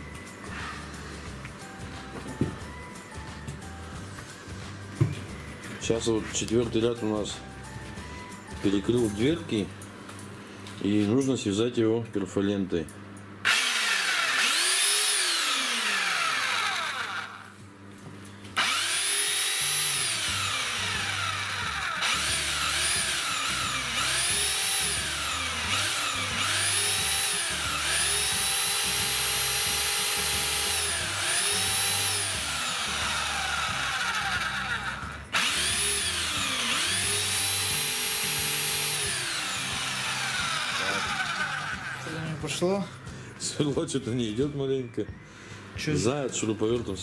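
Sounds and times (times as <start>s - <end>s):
power drill boring into brick: 13.5s - 17.5s, 18.6s - 42.1s.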